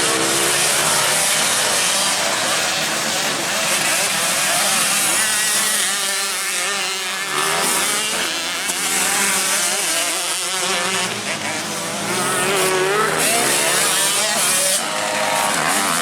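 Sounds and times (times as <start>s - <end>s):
dirt bike engines revving: 0.0s - 16.0s.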